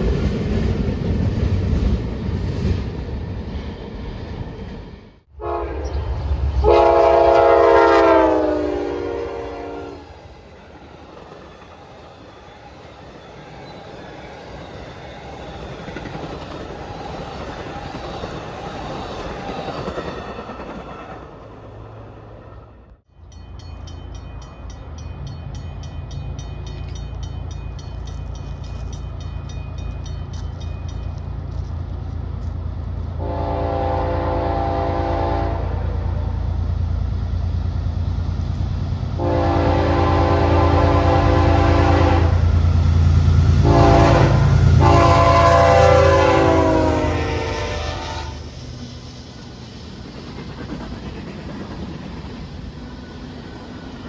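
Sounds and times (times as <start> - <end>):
diesel locomotive engine: 0.0 - 54.0
train rumbling past: 0.0 - 54.0
locomotive air horn: 5.4 - 6.0, 6.6 - 10.2, 33.2 - 36.2, 39.2 - 42.5, 43.6 - 48.5.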